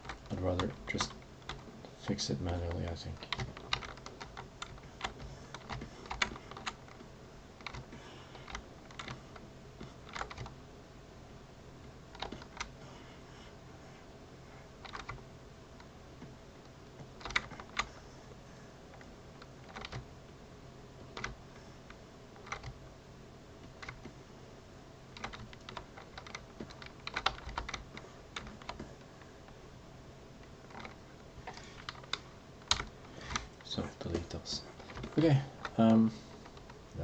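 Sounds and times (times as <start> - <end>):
faint steady hum: 0.0 - 37.0
keyboard and mouse clicks: 2.4 - 10.6, 12.1 - 12.8, 14.8 - 15.2, 17.0 - 17.9, 19.0 - 20.1, 21.0 - 21.4, 22.4 - 22.8, 23.6 - 24.2, 25.1 - 28.9, 30.7 - 33.5.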